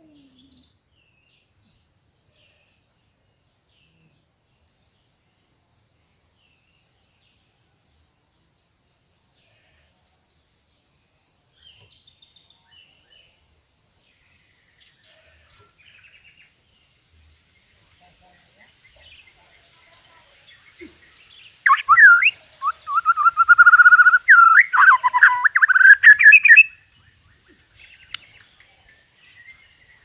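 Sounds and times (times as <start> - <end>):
bird whistles and chirps: 21.6 - 26.8.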